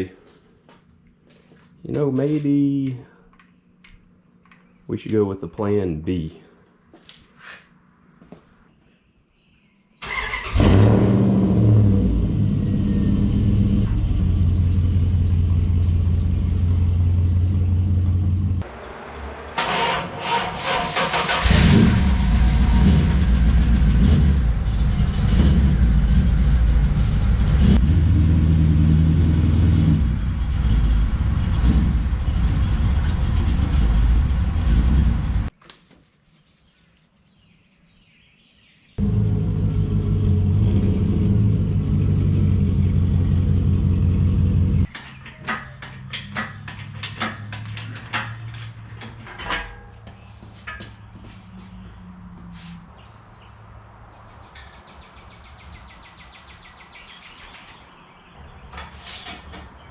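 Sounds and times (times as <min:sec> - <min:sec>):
car engine running: 0:12.0 - 0:35.5, 0:39.0 - 0:44.9.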